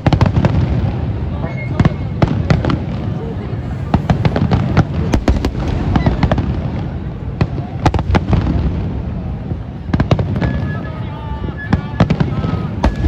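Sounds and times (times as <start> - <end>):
firework cracks: 0.0 - 10.6, 12.0 - 13.0.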